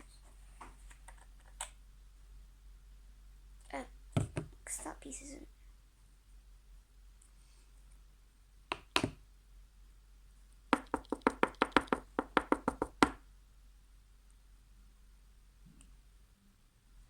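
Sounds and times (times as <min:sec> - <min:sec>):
rapid hard taps: 0:10.7 - 0:13.2
sharp knocks: 0:10.8 - 0:13.2.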